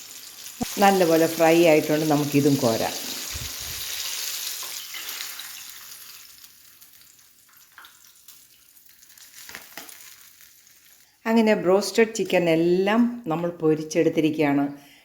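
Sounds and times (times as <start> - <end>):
chicken sizzling in hot oil: 0.0 - 11.1.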